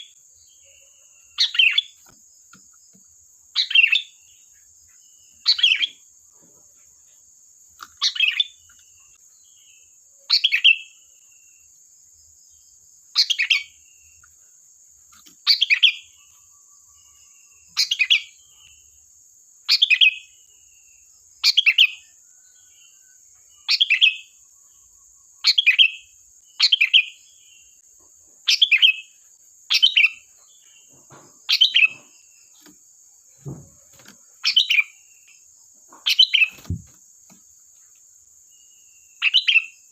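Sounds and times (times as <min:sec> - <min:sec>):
bird calling sharp phrases: 0:00.0 - 0:02.1, 0:03.5 - 0:04.4, 0:05.4 - 0:06.0, 0:07.8 - 0:08.7, 0:25.4 - 0:27.2, 0:28.4 - 0:32.7, 0:33.4 - 0:35.3, 0:35.9 - 0:37.0, 0:39.2 - 0:39.9.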